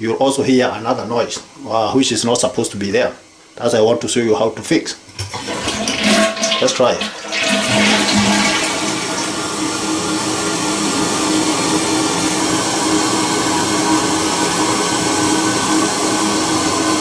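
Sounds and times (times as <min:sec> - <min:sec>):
fill valve humming: 0:04.9 - 0:17.0
toilet tank refilling: 0:05.0 - 0:17.0.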